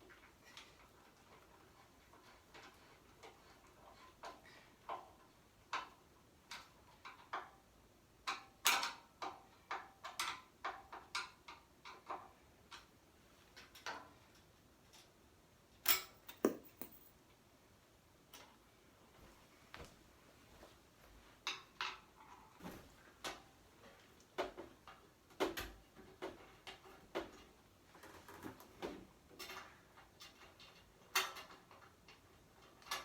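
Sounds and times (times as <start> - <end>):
hardware clicks and taps: 15.9 - 17.1.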